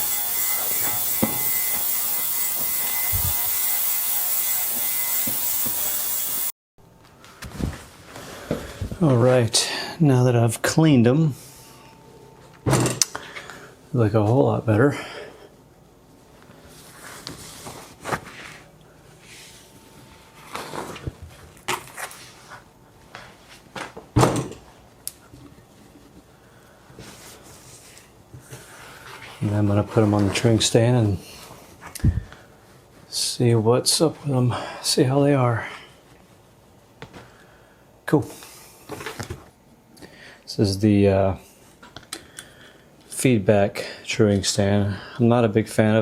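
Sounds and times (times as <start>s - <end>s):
mechanical ratcheting whir: 0.0s - 6.5s
knocks and clicks of tools: 0.6s - 3.6s.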